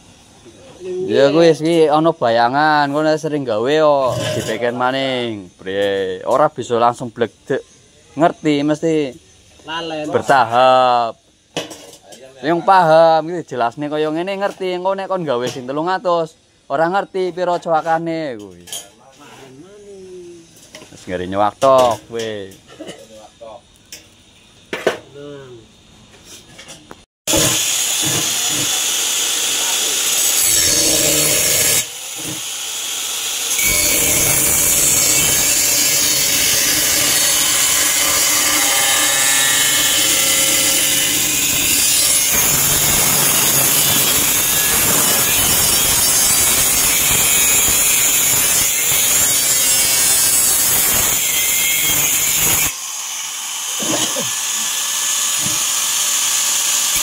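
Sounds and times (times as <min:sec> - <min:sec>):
power tool cutting sheet metal: 0:27.3 - 0:57.0.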